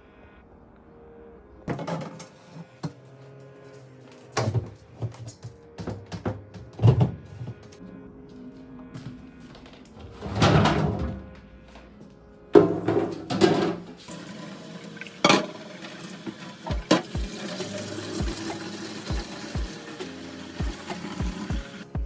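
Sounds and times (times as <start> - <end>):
quiet background music: 0.0 - 22.0
dishes clattering: 1.7 - 3.0, 12.6 - 14.0, 15.2 - 16.0.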